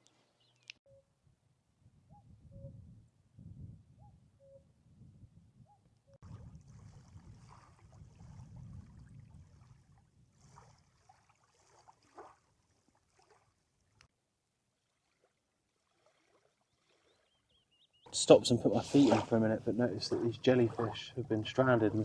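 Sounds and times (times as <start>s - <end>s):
wind rumble on microphone: 1.2s - 11.1s
faint water lapping on shore: 6.2s - 22.0s.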